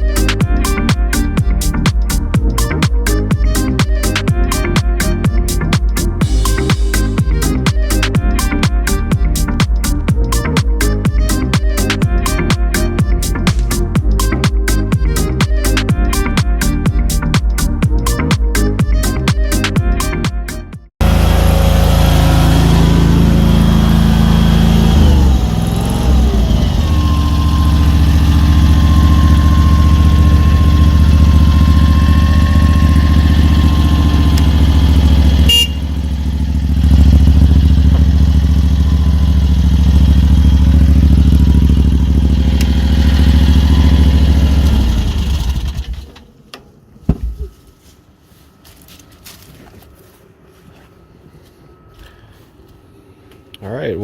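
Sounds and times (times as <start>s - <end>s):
gasoline engine running: 0.0s - 46.3s.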